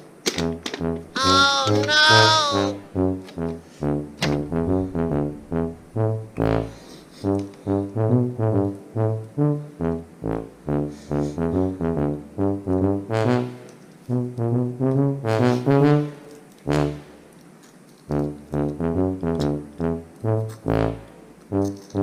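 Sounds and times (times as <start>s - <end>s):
brass music short notes: 0.4s - 17.2s, 18.1s - 22.0s.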